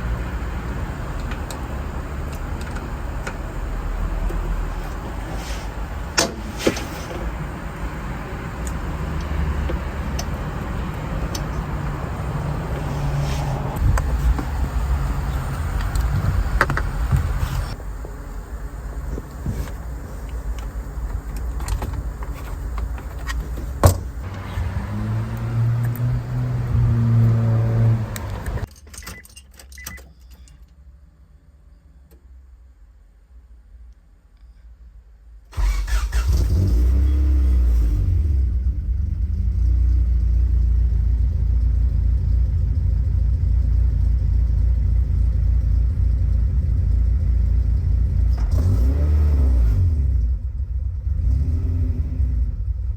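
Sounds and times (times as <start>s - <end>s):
car engine idling: 0.0s - 28.7s, 35.6s - 51.4s
light clicks and rattles: 18.9s - 24.4s
sharp clicks: 25.3s - 26.2s.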